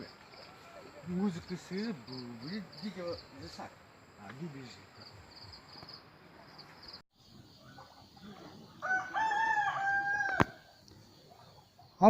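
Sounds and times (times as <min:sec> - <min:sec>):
rooster crowing: 0:08.1 - 0:10.8.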